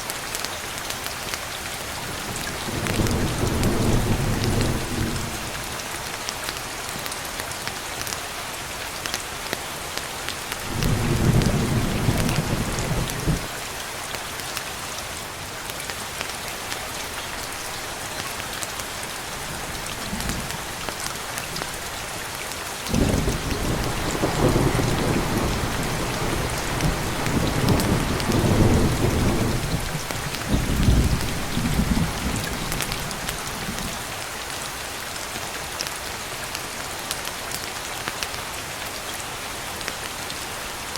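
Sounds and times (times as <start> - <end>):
steady rain falling: 0.0 - 40.9
rolling thunder: 22.9 - 33.8.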